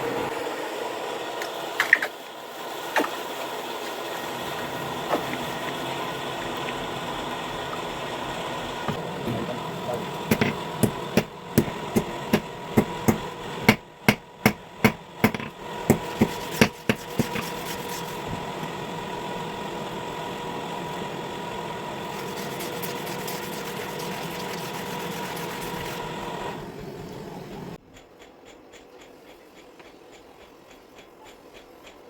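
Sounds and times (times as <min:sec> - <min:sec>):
machine hum with whine: 0:03.6 - 0:27.8.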